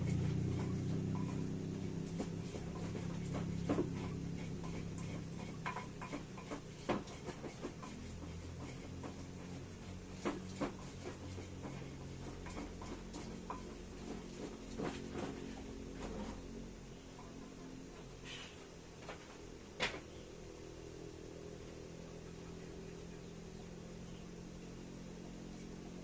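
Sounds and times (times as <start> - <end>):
low hum: 0.0 - 26.0
utensils knocking and clicking: 0.1 - 15.5.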